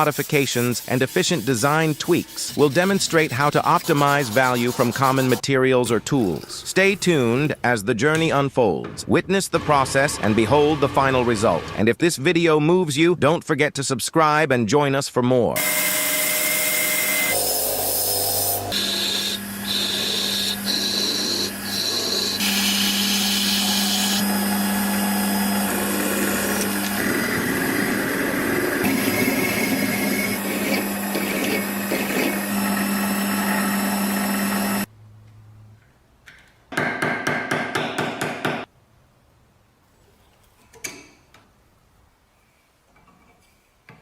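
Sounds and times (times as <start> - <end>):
electric power tool grinding: 15.6 - 34.9.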